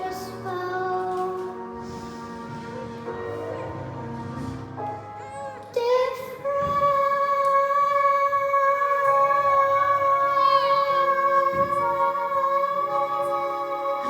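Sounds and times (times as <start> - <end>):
recorded backing track: 0.0 - 14.0
person singing a long note: 5.4 - 14.0.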